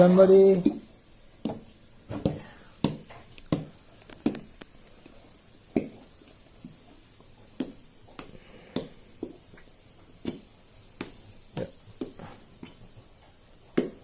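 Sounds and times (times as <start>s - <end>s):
glue bottle popping and squelching: 1.4s - 4.8s.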